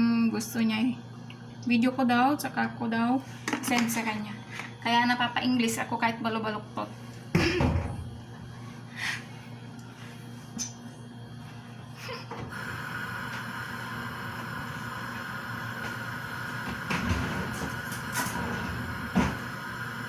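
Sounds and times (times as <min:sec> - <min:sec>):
kitchen hum: 0:01.6 - 0:20.0
high steady whir: 0:12.4 - 0:20.0.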